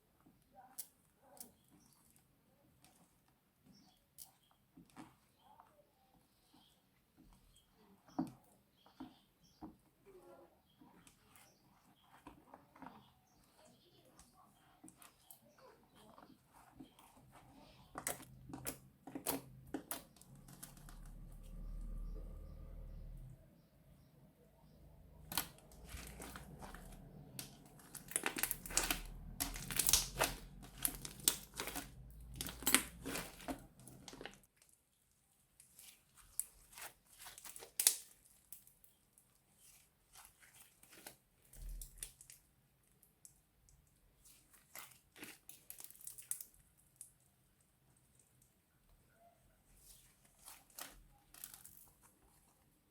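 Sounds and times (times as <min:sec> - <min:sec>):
plastic bag crinkling: 0:25.3 - 0:34.7.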